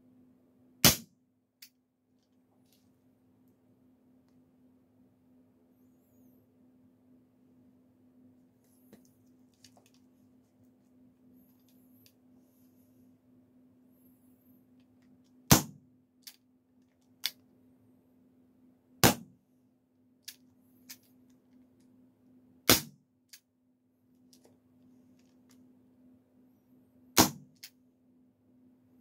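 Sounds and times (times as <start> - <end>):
airsoft revolver shots: 0.8 - 1.1, 15.5 - 15.8, 19.0 - 19.2, 22.7 - 23.0, 27.2 - 27.5.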